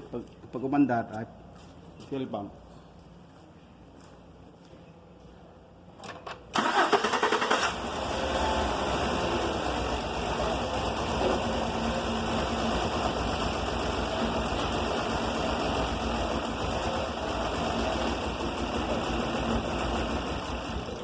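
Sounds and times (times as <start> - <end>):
starter cranking engine: 6.5 - 8.0
engine running steadily: 6.6 - 21.0.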